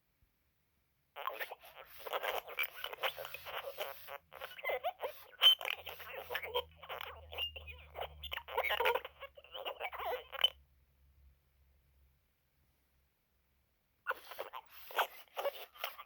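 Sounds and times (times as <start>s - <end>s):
toy speaker glitched voice chirps: 1.2s - 10.6s, 14.1s - 16.0s.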